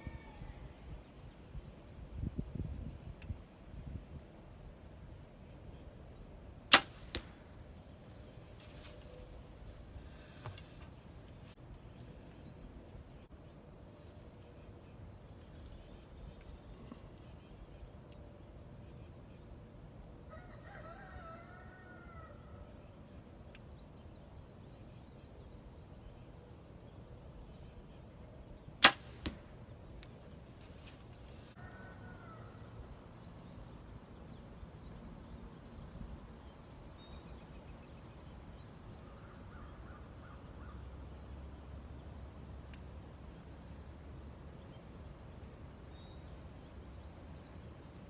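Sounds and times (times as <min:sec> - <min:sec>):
bow string snap: 0:06.7 - 0:07.4, 0:28.8 - 0:30.1.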